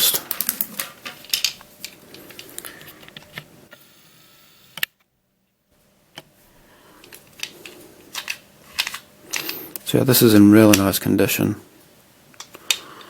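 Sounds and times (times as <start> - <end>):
plastic puzzle clicks and knocks: 7.0 - 9.9, 10.6 - 11.0.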